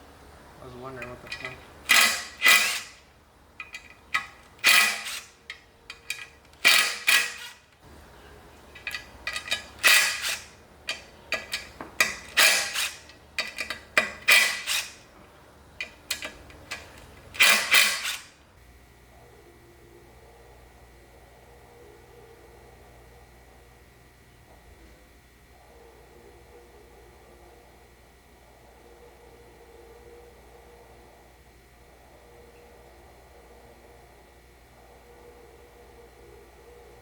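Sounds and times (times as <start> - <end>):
faint steady hum: 0.0 - 37.0
metallic clinks of hand tools: 1.0 - 3.0, 3.6 - 7.6, 8.8 - 15.0, 15.8 - 18.3.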